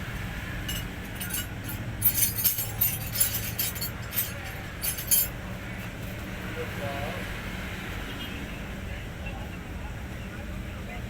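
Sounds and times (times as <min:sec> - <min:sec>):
metallic clinking and jingling: 0:00.6 - 0:05.4
small metal knocks: 0:00.7 - 0:05.3.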